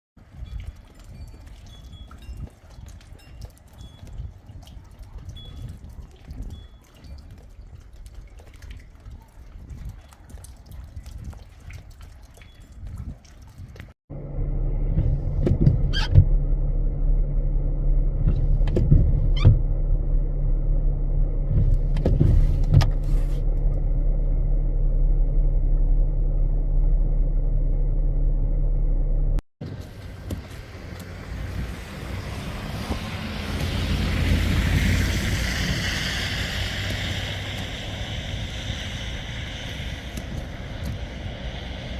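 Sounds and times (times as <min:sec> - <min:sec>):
wind on microphone: 0:00.2 - 0:13.9, 0:29.6 - 0:41.9
vehicle low rumble and hum: 0:00.2 - 0:41.9.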